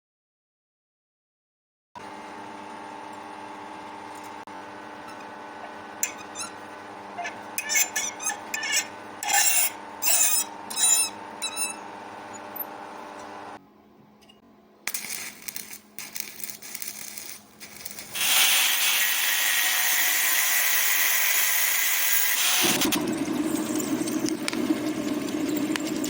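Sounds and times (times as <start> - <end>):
steady machine hum: 2.0 - 20.0
metal scraping strokes: 6.0 - 6.6, 7.2 - 12.8, 14.9 - 21.0.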